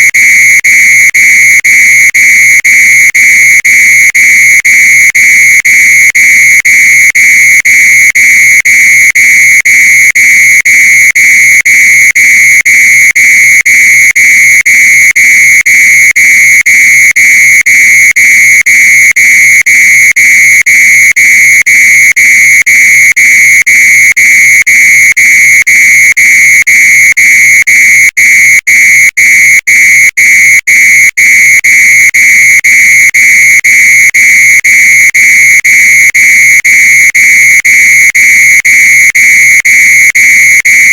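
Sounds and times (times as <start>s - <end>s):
fire alarm shrill pulsing tone: 0.0s - 40.9s.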